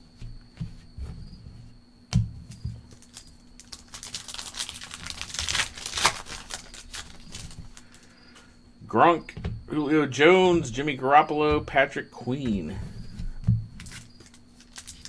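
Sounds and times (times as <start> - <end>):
trading cards being handled: 2.5 - 15.0
foil wrapper crinkling and tearing: 2.8 - 8.4, 13.8 - 15.0.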